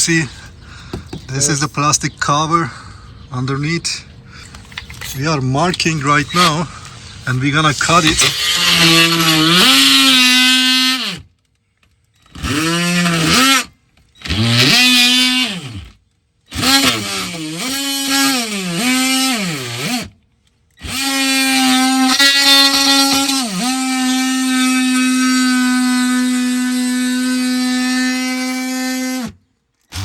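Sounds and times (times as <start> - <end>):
power tool cutting plastic: 5.7 - 6.7, 7.3 - 11.4, 12.2 - 30.0.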